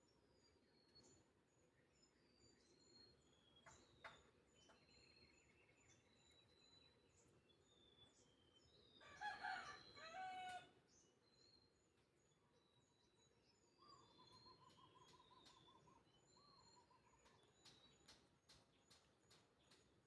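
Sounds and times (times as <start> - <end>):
rooster crowing: 9.0 - 10.7
faint bird chirps: 11.0 - 20.0.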